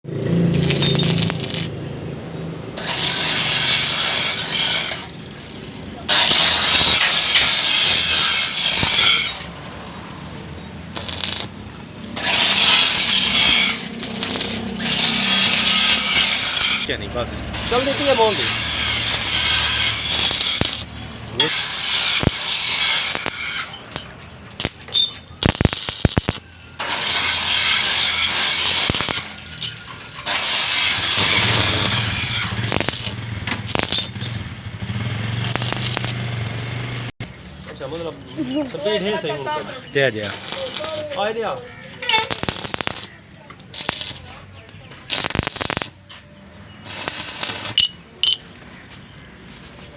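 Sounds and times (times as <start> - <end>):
arc welding crackling: 0.4 - 1.8, 2.8 - 5.1, 6.1 - 9.5, 10.9 - 16.9, 17.6 - 34.2, 34.9 - 36.4, 40.2 - 44.4, 45.1 - 46.0, 46.8 - 48.0
metallic knocks: 47.7 - 48.6.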